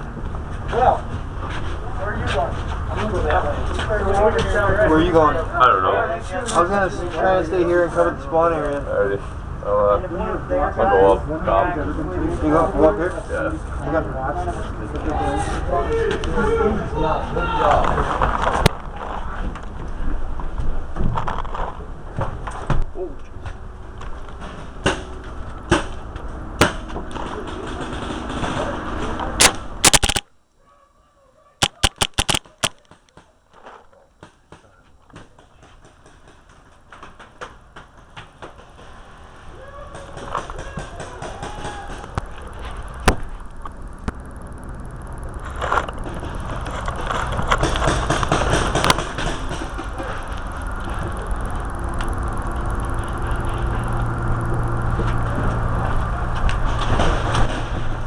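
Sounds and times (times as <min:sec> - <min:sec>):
rustling and scraping: 0:00.4 - 0:04.7, 0:45.2 - 0:53.9
handling rumble: 0:09.7 - 0:29.9, 0:34.3 - 0:58.0
paintball marker shots: 0:29.4 - 0:30.2, 0:31.6 - 0:33.0
camera handling rumble: 0:29.4 - 0:30.3, 0:31.6 - 0:32.9, 0:41.9 - 0:55.4.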